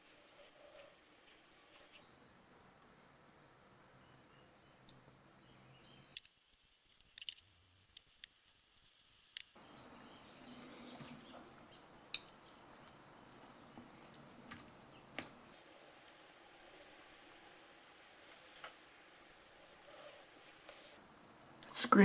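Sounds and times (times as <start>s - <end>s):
small parts clicking and tapping: 6.2s - 9.6s.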